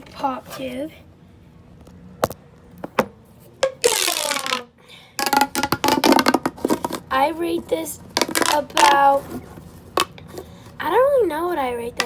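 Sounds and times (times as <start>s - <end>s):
plastic pop tube popping: 2.2s - 7.0s, 8.2s - 9.0s, 10.0s - 10.2s
pop tube ribs clicking: 3.6s - 7.1s, 8.2s - 9.0s.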